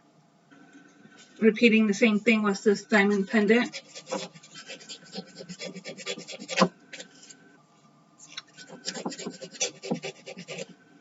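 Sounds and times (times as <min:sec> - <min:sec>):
nail file rasping: 0:03.6 - 0:07.3, 0:08.3 - 0:10.7.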